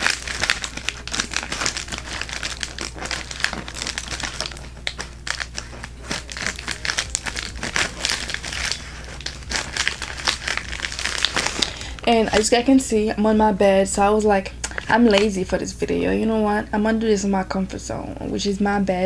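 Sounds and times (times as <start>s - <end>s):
packaging crinkling: 0.0s - 12.6s.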